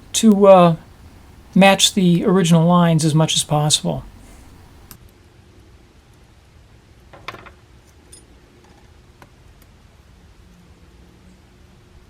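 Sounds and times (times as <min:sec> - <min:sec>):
low steady hum: 0:00.0 - 0:05.0.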